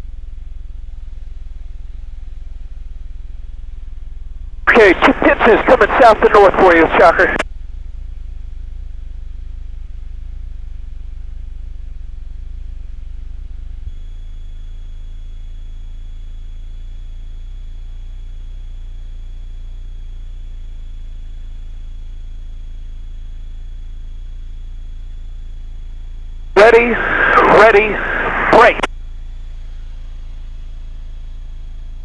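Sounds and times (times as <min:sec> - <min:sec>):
piston aircraft engine drone: 0:00.0 - 0:08.9, 0:24.9 - 0:32.0
faint high whine: 0:00.2 - 0:07.4, 0:08.4 - 0:32.0.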